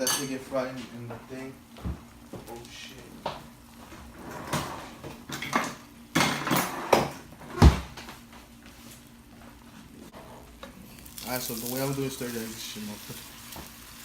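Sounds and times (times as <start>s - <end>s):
kitchen knocks and clunks: 1.8s - 2.5s, 3.2s - 8.2s.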